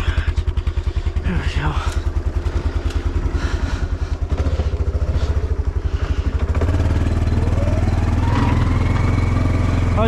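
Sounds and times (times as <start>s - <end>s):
atv engine running: 0.0s - 10.0s.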